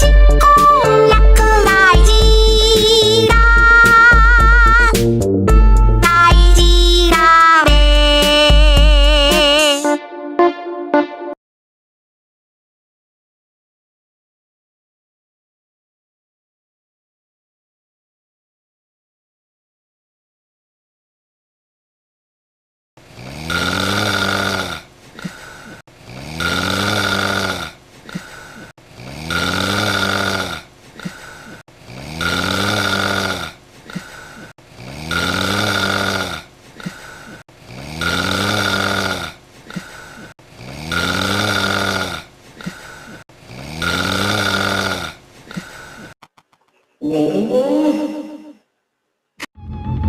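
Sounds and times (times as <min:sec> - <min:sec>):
loud snoring: 0:23.0 - 0:31.2, 0:31.8 - 0:34.1, 0:34.7 - 0:39.8, 0:40.5 - 0:45.7
quiet breath: 0:25.2 - 0:25.8, 0:30.9 - 0:31.6, 0:33.8 - 0:34.5, 0:36.7 - 0:37.4, 0:39.7 - 0:40.4, 0:42.5 - 0:43.2, 0:45.4 - 0:46.2.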